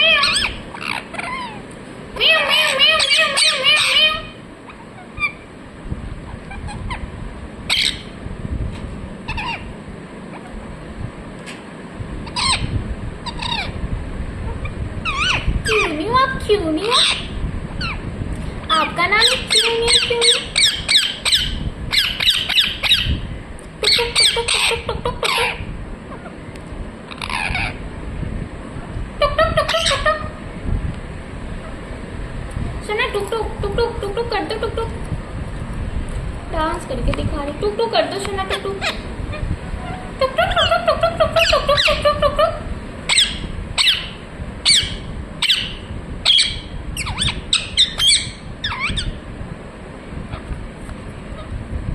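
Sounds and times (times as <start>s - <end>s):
parrot squawking: 0.0s - 1.6s, 2.2s - 5.5s, 6.3s - 7.0s, 7.7s - 8.2s, 9.3s - 9.7s, 12.2s - 13.8s, 14.5s - 16.0s, 16.8s - 18.0s, 18.6s - 23.2s, 23.8s - 26.4s, 27.1s - 27.8s, 29.2s - 30.4s, 38.5s - 49.2s.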